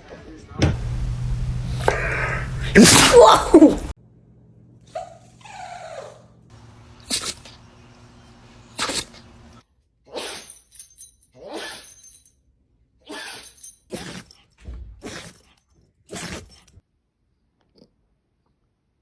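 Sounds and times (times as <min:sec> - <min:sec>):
dog sneezing: 0:00.7 - 0:03.9, 0:05.0 - 0:10.6, 0:11.4 - 0:12.0, 0:13.1 - 0:14.4, 0:15.0 - 0:15.4, 0:16.1 - 0:16.6.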